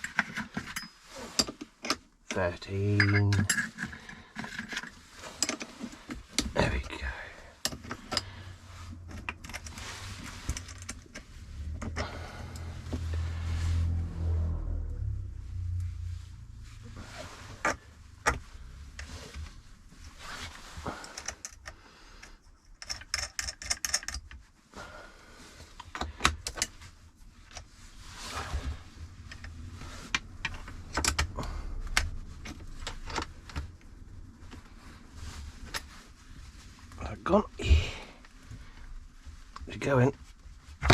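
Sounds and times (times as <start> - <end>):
spanner clinking on metal nut: 2.9 - 3.8, 22.8 - 24.2.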